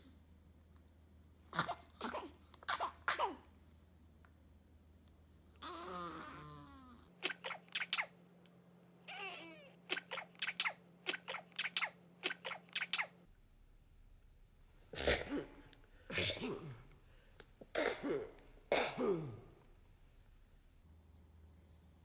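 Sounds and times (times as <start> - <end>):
infant sneezing: 1.5 - 3.5, 7.2 - 8.2, 9.1 - 13.2, 17.7 - 19.4.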